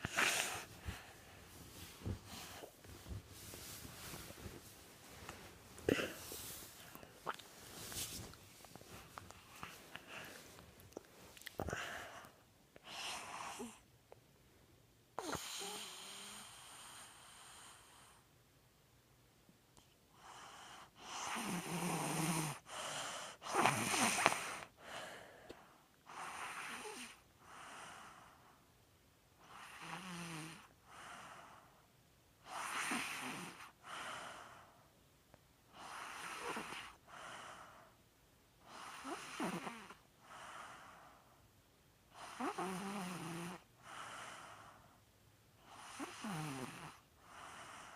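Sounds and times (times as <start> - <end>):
person snoring: 5.9 - 6.4, 38.7 - 40.0, 42.2 - 44.7, 45.7 - 47.8.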